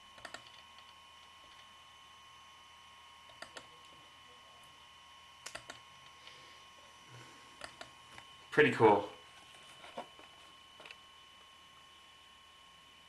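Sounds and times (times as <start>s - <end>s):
faint steady high whine: 0.0s - 13.0s.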